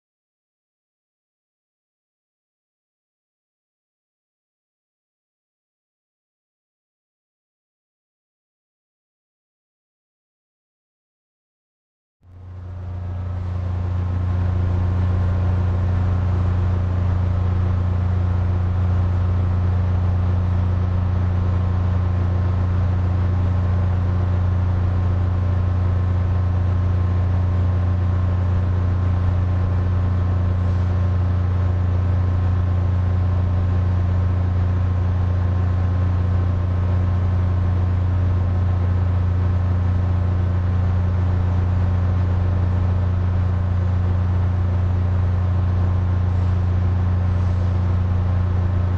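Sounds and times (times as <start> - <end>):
air conditioner humming: 12.3 - 21.9, 45.4 - 48.9.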